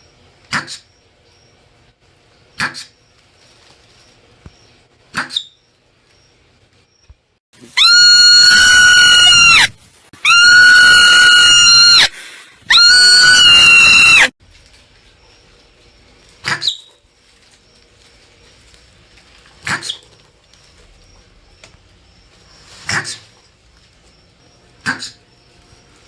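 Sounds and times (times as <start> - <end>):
marmot high-pitched calls: 7.8 - 12.1.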